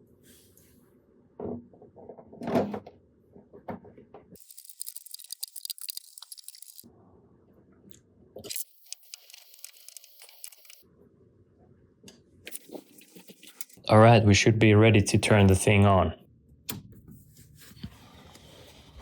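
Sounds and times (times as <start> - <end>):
crinkly rustling noise: 4.4 - 6.8.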